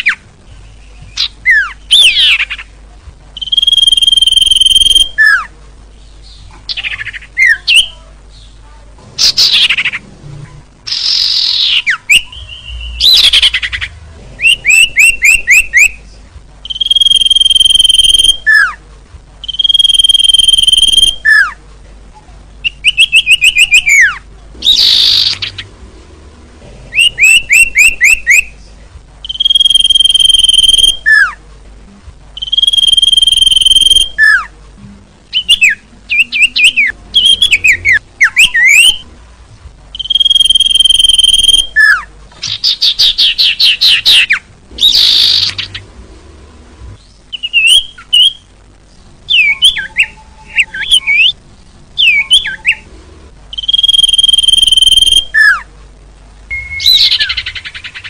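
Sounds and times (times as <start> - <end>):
bird song whistles and trills: 0.0 - 2.7, 3.4 - 5.5, 10.9 - 16.0, 16.6 - 18.8, 19.4 - 21.6, 22.6 - 25.7, 26.9 - 28.5, 29.2 - 31.4, 32.4 - 34.5, 35.3 - 39.0, 39.9 - 45.8, 47.0 - 48.5, 49.3 - 51.4, 52.0 - 52.9, 53.5 - 55.7, 56.5 - 58.0.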